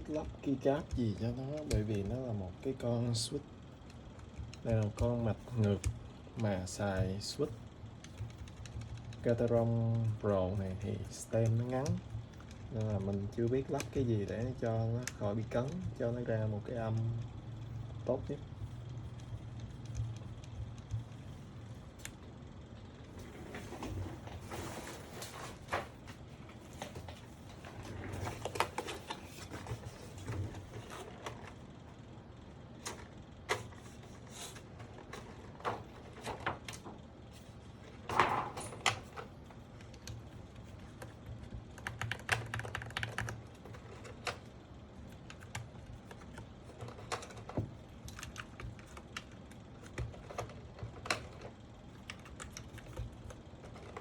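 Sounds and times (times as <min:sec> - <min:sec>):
mechanical keyboard keys clacking: 0:00.1 - 0:17.3, 0:38.0 - 0:54.0.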